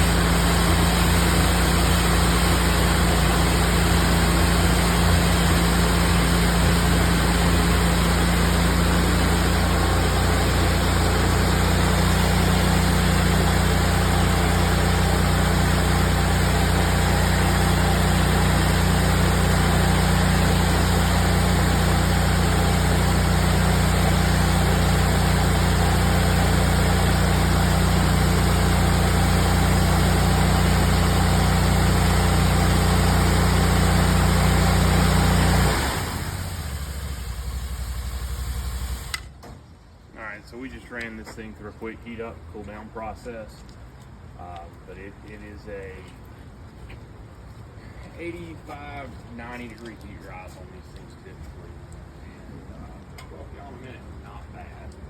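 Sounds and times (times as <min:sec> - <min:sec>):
petrol engine running: 0:00.0 - 0:39.3.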